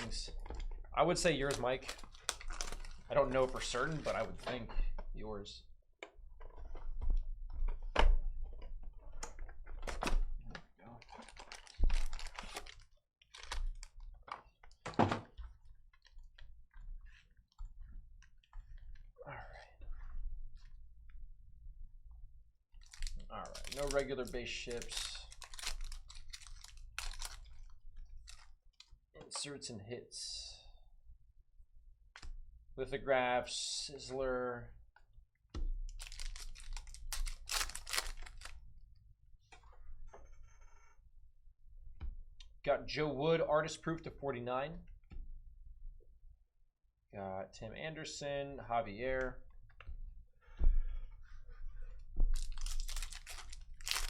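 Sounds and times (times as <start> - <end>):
packs rustling: 1.2 - 4.5, 11.0 - 14.0, 22.8 - 28.6, 35.9 - 38.6, 52.3 - 54.0.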